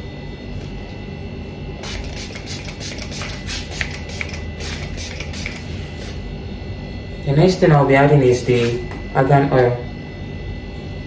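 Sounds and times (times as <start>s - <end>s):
low steady hum: 0.0s - 11.0s
spray bottle hissing sprays: 1.8s - 6.2s.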